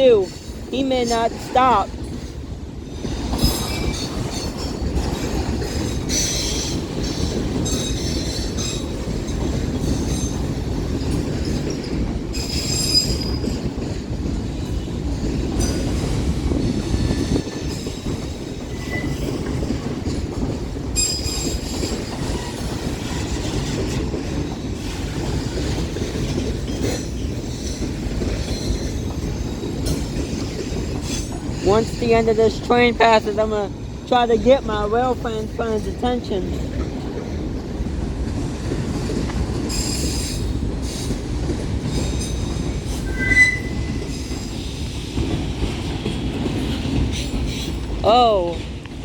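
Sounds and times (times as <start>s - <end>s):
train wheels rumbling on rails: 0.0s - 49.0s
wheel squeals: 18.7s - 19.4s, 42.0s - 44.5s.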